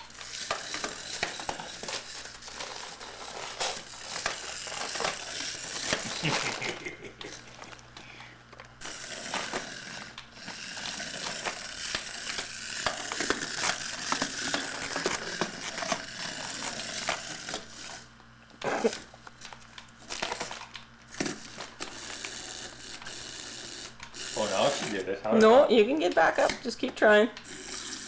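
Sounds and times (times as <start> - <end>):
paper or plastic crinkling: 0.0 - 7.9, 18.9 - 22.2.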